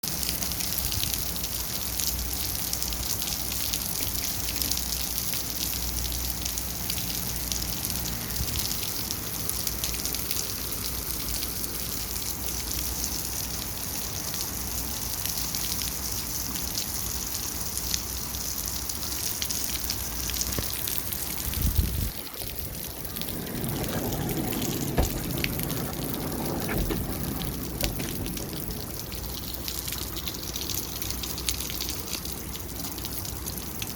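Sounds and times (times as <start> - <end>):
rain falling: 0.0 - 33.9.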